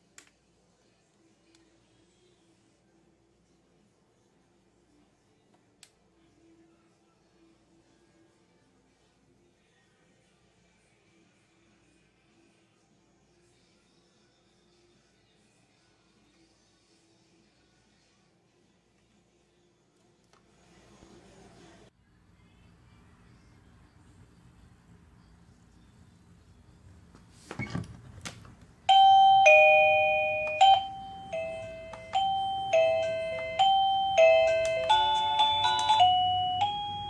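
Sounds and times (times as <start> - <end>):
electronic doorbell chime tune: 28.9 - 37.0.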